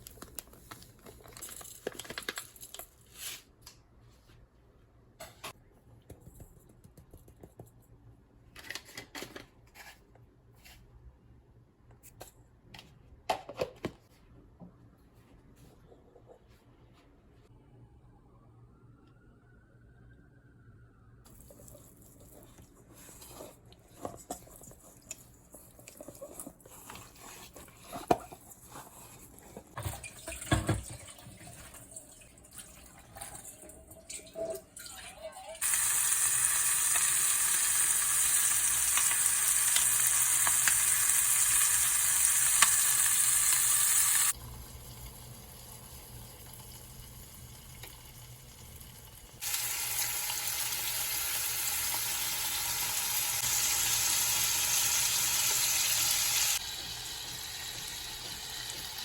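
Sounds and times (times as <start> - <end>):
meat sizzling in a pan: 35.6 - 44.3, 49.4 - 59.0.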